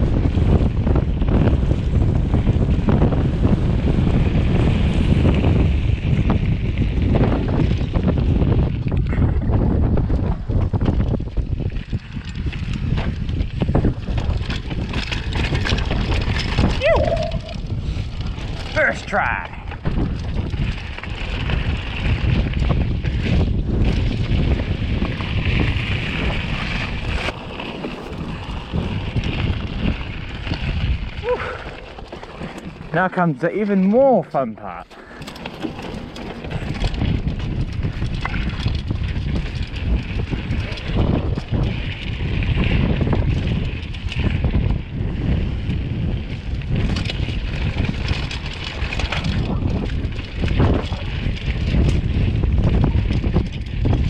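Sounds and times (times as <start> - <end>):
tyres rumbling on trail: 0.0 - 54.0
wind buffeting microphone: 0.0 - 54.0
bike knocking over bumps: 34.9 - 44.6.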